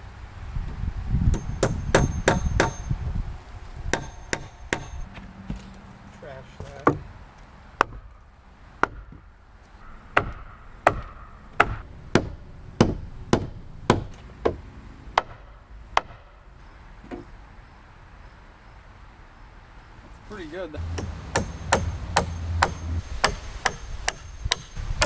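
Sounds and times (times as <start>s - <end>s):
hammer striking wood: 1.3s - 2.9s, 3.9s - 5.6s, 6.6s - 7.1s, 7.8s - 8.1s, 8.8s - 14.6s, 15.2s - 16.4s, 20.8s - 24.8s.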